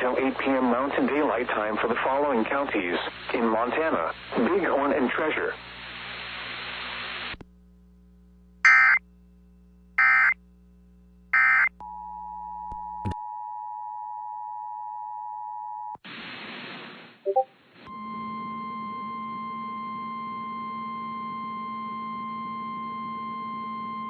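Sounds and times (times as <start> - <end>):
radio hiss: 0.0 - 7.4
digital data tone bursts: 8.7 - 9.0, 10.0 - 10.4, 11.4 - 11.7.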